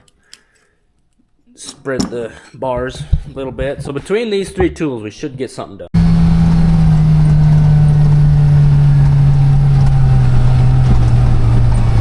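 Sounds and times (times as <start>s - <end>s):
vehicle engine droning: 6.0s - 12.0s.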